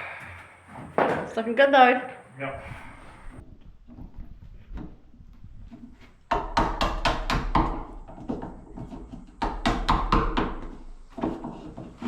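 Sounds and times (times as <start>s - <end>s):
hammer striking wood: 6.3s - 8.5s, 9.4s - 11.4s.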